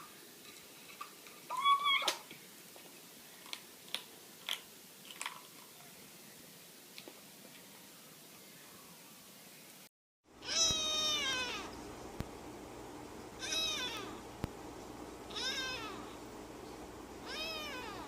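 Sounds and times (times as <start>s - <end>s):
cat meowing: 10.4s - 11.7s, 13.4s - 14.2s, 15.3s - 16.1s, 17.2s - 18.0s.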